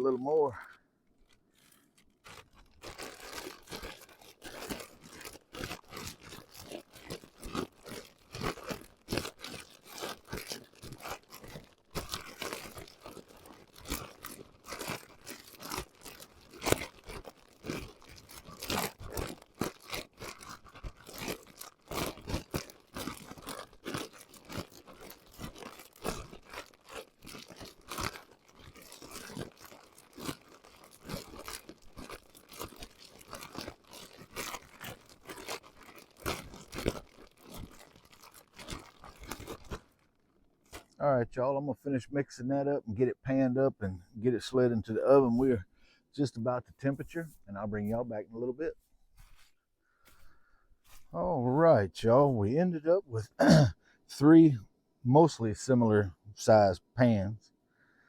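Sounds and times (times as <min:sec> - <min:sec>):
plastic bag crinkling: 0:00.1 - 0:41.0.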